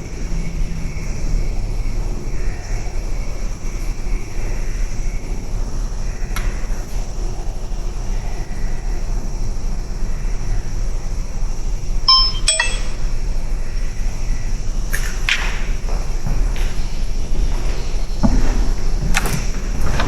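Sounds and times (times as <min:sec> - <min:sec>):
ringing metallic clink: 0:12.1 - 0:13.1.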